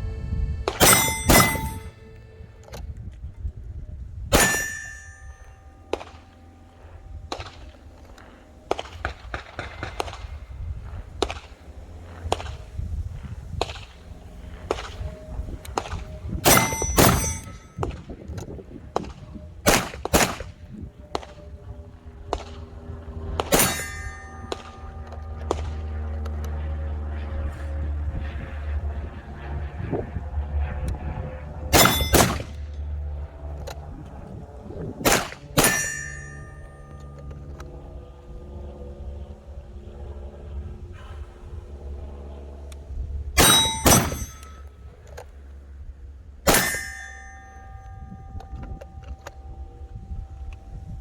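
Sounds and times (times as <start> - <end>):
ringing metallic tone: 0.0 - 3.0, 4.3 - 11.0, 14.0 - 27.4, 31.0 - 40.5, 43.4 - 45.1, 46.5 - 51.0
gunshots: 0.7 - 1.9, 4.3 - 5.2, 15.8 - 18.0, 19.0 - 21.3, 23.4 - 24.9, 31.7 - 32.6, 35.0 - 36.5, 43.4 - 44.4, 46.5 - 47.0.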